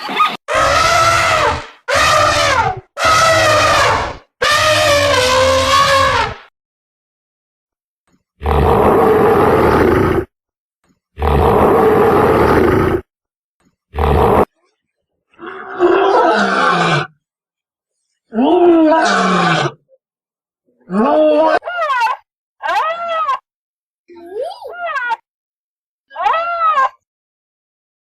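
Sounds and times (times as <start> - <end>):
wild animal roars: 0.5 - 6.4, 8.4 - 10.3, 11.2 - 13.1, 13.9 - 14.5, 15.4 - 17.2, 18.3 - 19.8.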